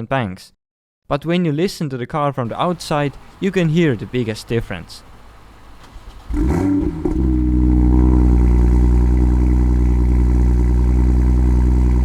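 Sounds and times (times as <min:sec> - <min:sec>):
car engine starting and idling: 0:02.5 - 0:12.0.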